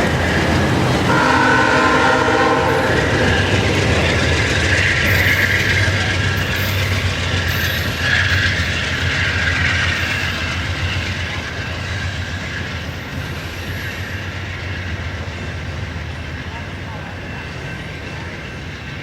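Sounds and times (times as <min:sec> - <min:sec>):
train wheel squeal: 0:00.0 - 0:19.0
train wheels clacking on rails: 0:00.0 - 0:19.0.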